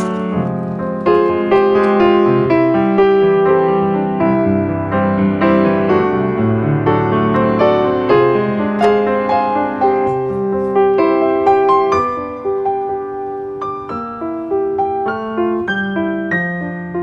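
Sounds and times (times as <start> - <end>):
soft piano music: 0.0 - 17.0.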